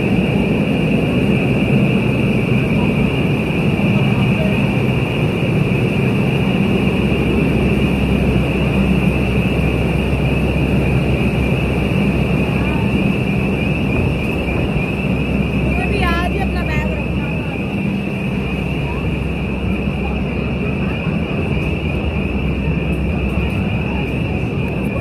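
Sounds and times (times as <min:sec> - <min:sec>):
fire alarm high-pitched tone: 0:00.0 - 0:25.0.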